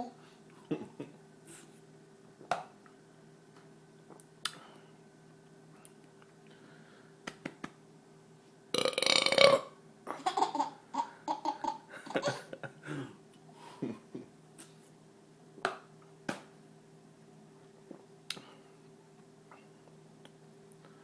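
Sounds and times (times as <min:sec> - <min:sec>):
man burping loudly: 0:08.8 - 0:09.8
baby laughing: 0:10.1 - 0:12.6.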